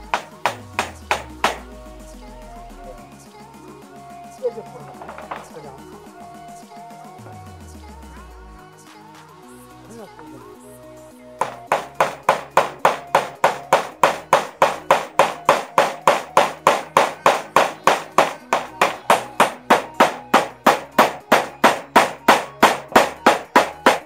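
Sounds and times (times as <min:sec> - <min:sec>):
hammer blows: 0:00.0 - 0:01.7, 0:11.4 - 0:24.0.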